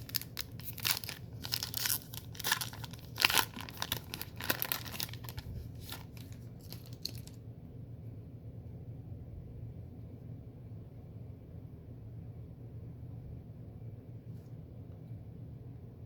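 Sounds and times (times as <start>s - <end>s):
wrapper tearing and crinkling: 0.0s - 7.4s.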